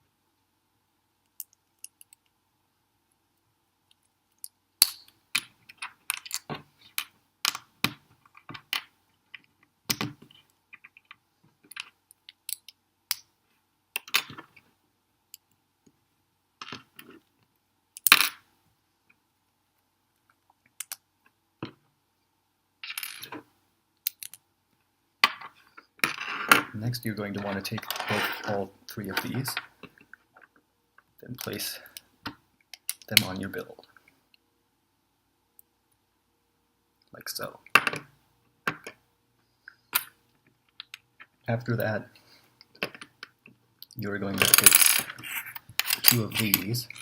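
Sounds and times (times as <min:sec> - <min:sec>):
plastic bricks clicking together: 0:20.8 - 0:21.0, 0:24.0 - 0:24.4.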